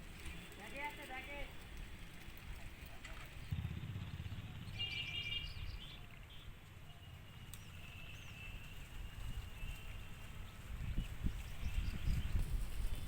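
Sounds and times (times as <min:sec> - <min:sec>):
bird chirping: 0:03.4 - 0:08.7.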